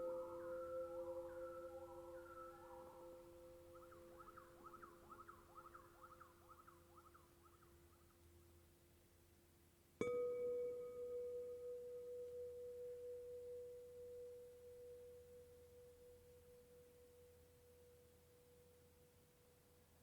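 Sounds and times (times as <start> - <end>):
singing bowl ringing: 0.0 - 4.2, 10.0 - 17.4
lower tone of another bowl: 0.0 - 7.2, 10.0 - 19.1.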